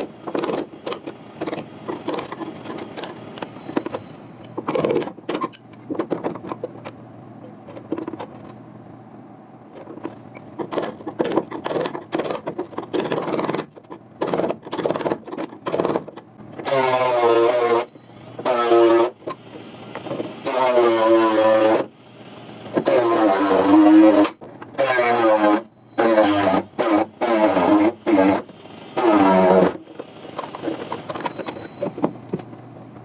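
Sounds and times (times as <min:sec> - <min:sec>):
knocks and scrapes on sheet metal: 0:09.8 - 0:16.7
power tool cutting: 0:16.6 - 0:19.3, 0:20.3 - 0:21.9, 0:22.7 - 0:31.0.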